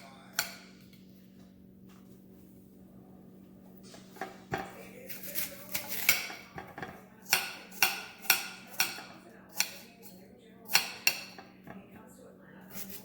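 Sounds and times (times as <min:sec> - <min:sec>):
low steady hum: 0:00.0 - 0:13.0
knife and dishes knocking: 0:03.9 - 0:11.9.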